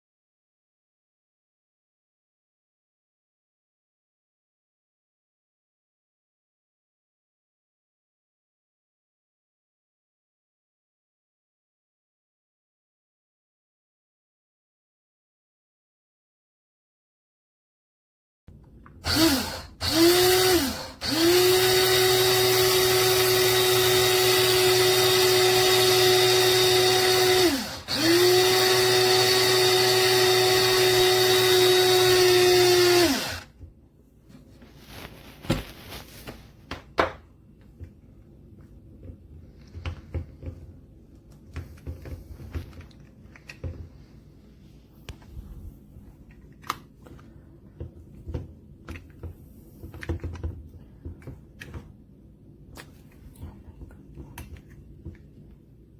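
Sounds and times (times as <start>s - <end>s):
coffee grinder motor running: 19.0s - 33.5s
faint clicks and handling noises: 33.6s - 52.0s.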